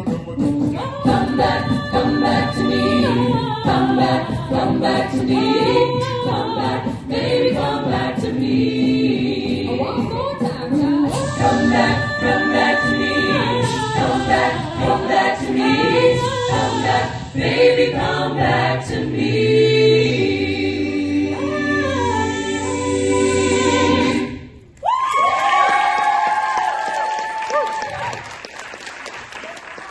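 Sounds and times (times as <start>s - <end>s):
a cappella group singing: 0.0s - 24.7s
audience cheering and applause: 24.8s - 29.9s.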